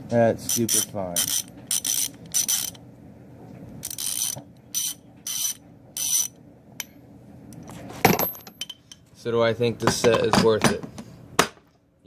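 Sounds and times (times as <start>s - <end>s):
socket ratchet clicking: 0.5s - 2.8s, 3.8s - 6.3s.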